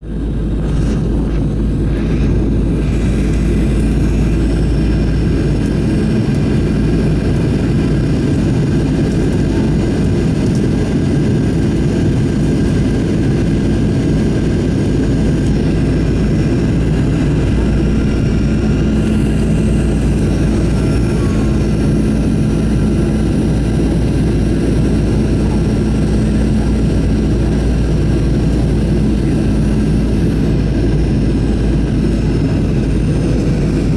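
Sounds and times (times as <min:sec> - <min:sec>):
airflow: 0:00.0 - 0:10.8, 0:11.4 - 0:33.9
airplane engines rumbling: 0:00.0 - 0:33.9.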